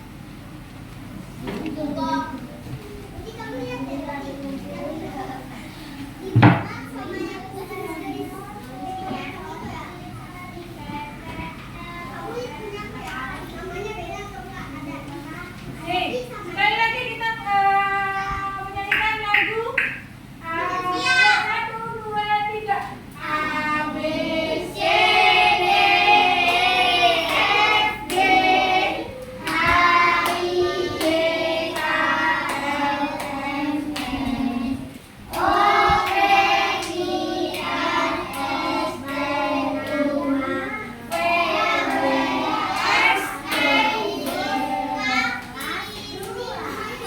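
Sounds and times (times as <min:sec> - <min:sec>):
children singing: 0:23.2 - 0:47.0.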